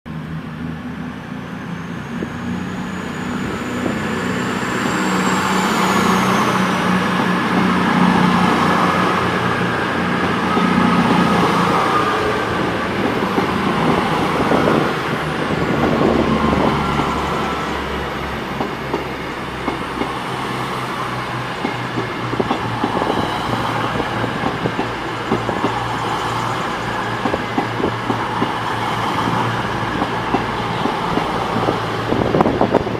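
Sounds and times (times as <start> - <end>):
diesel train engines throbbing: 0.1 - 32.9
train wheels clicking over rail joints: 18.5 - 32.9.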